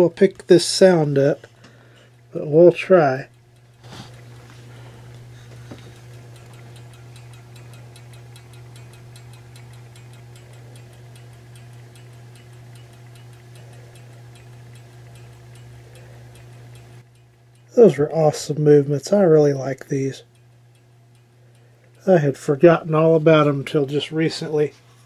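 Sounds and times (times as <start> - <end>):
steady low hum: 0.0 - 25.0
clock ticking: 2.3 - 24.4.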